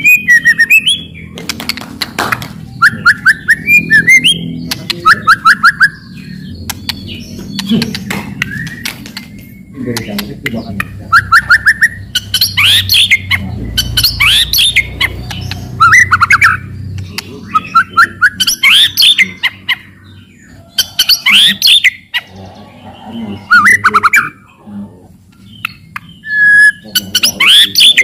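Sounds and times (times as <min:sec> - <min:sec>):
bird whistling song: 0:00.0 - 0:01.4, 0:02.6 - 0:24.4, 0:25.4 - 0:28.0
bird clicking chatter: 0:01.3 - 0:02.7, 0:04.6 - 0:05.9, 0:06.6 - 0:11.6, 0:14.0 - 0:17.7.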